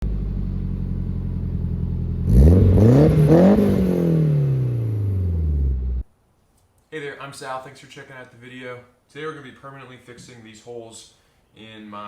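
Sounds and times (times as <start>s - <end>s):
car engine idling and revving: 0.0s - 6.0s.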